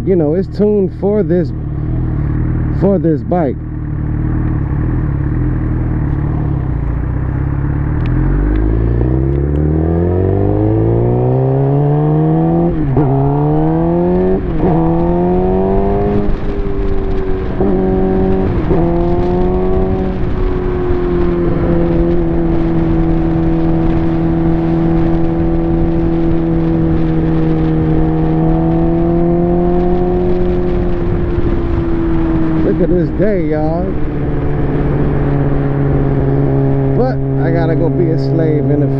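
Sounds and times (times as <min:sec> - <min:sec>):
motorcycle engine accelerating: 0:00.0 - 0:38.9.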